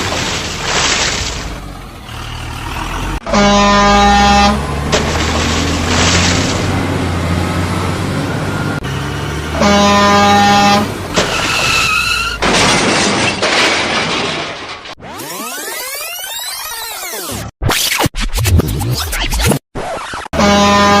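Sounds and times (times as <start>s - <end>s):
engine rumble: 0.0s - 13.7s
vehicle horn blast: 3.2s - 4.6s, 9.6s - 10.9s, 20.4s - 21.0s
higher-pitched horn toot: 3.3s - 4.6s, 9.6s - 10.9s, 20.4s - 21.0s.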